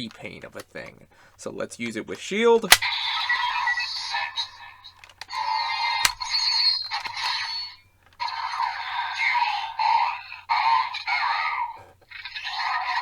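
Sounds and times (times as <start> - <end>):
sharp plastic click: 0.0 - 1.0, 1.9 - 3.6, 5.0 - 8.3.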